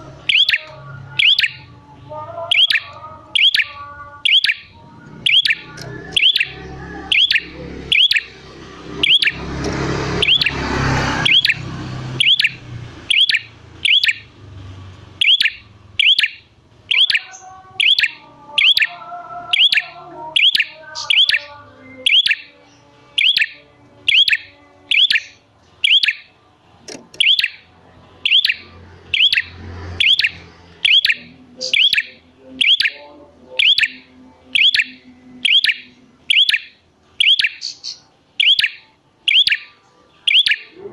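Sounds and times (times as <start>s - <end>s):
bird chirping: 0.0s - 40.9s.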